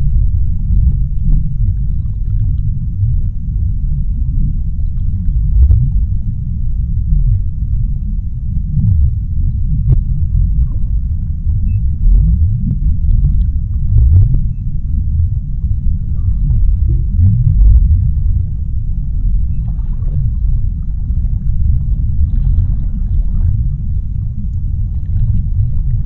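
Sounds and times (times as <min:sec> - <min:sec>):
deep underwater rumble: 0:00.0 - 0:26.0
faint clicks and crackles: 0:00.0 - 0:26.0.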